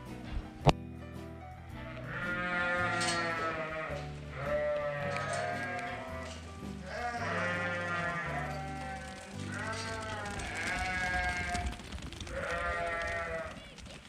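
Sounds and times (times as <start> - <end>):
background music with bass line: 0.0 - 9.7
sheep bleating: 1.8 - 13.7.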